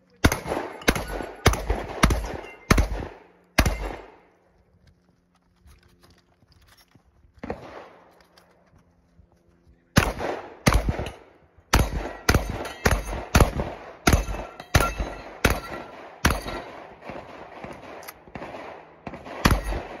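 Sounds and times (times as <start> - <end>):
shotgun shots: 0.2 - 4.2, 10.0 - 20.0.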